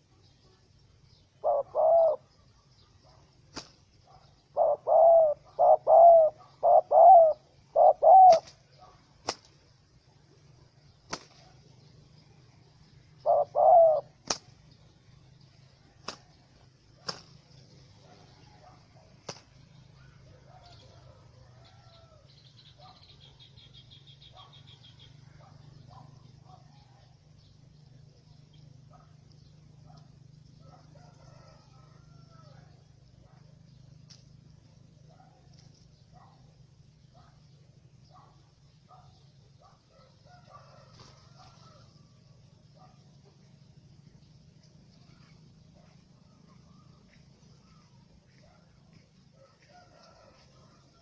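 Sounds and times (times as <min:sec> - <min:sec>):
dove cooing: 0:01.2 - 0:03.2, 0:04.1 - 0:09.1, 0:11.2 - 0:15.4, 0:29.8 - 0:36.5.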